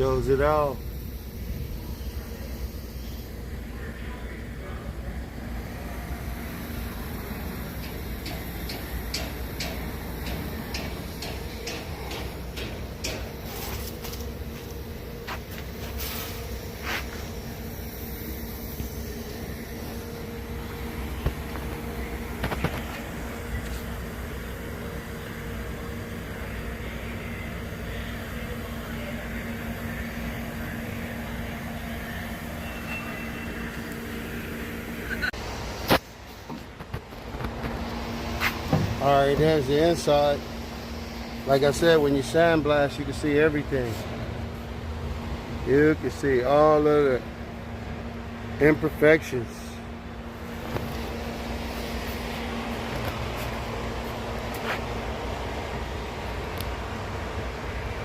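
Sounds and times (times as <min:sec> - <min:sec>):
steady low rumble: 0:00.0 - 0:32.5.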